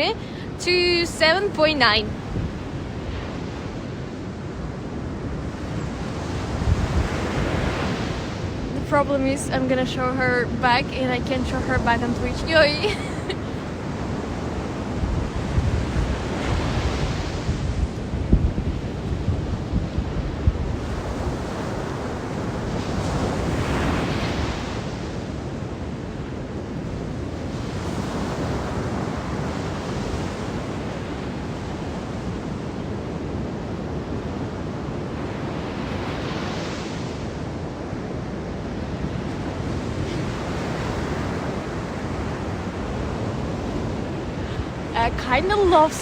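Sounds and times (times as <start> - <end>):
sea waves washing onto beach: 0.0 - 46.0
wind buffeting microphone: 0.0 - 46.0.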